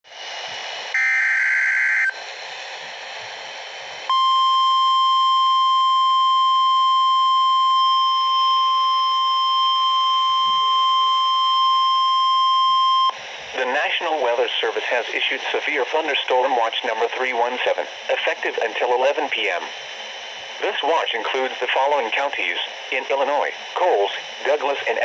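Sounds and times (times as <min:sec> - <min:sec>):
steady alarm tone: 0:00.9 - 0:02.2, 0:04.1 - 0:13.2
radio hiss: 0:13.1 - 0:25.0.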